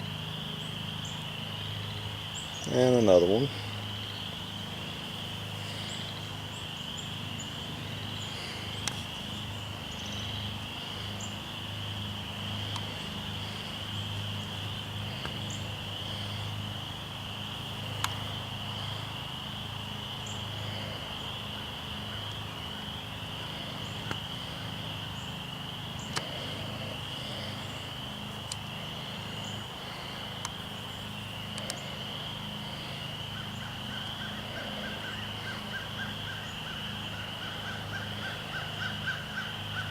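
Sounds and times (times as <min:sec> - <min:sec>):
insects trilling: 0:00.0 - 0:39.9
low steady hum: 0:00.0 - 0:39.9
faint clicks: 0:08.8 - 0:09.1, 0:18.0 - 0:18.2, 0:24.0 - 0:24.2, 0:26.0 - 0:26.3.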